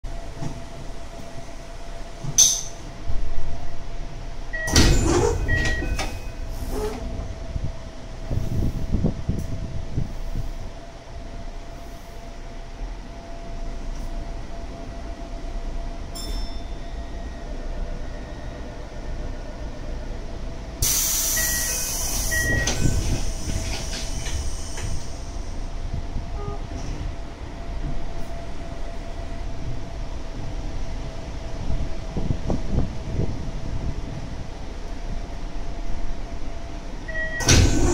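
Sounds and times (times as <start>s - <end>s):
train equipment hum: 0.0s - 37.9s
train doors slamming: 4.5s - 7.4s, 20.8s - 25.6s, 37.1s - 37.9s
loud air hiss blast: 20.8s - 25.5s.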